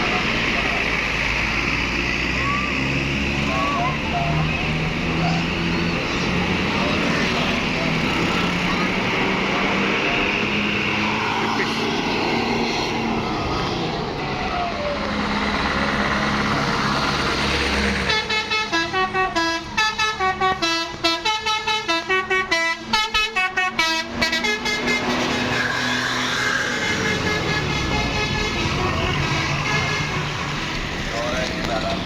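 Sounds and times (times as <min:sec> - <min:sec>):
bus engine running: 0:00.0 - 0:32.0
multi-tone air horn tune: 0:26.6 - 0:30.5.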